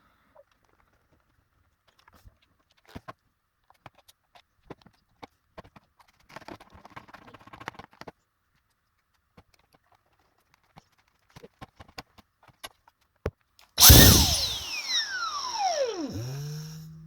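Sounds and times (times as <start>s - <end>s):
rapid clicking: 13.8s - 17.0s.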